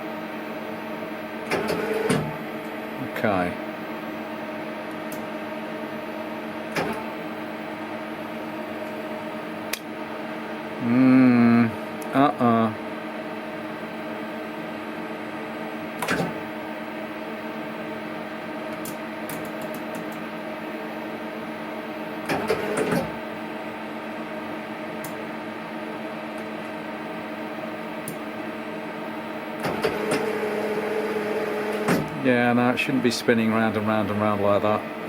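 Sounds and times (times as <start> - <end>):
machine turret humming whine: 0.0 - 35.0.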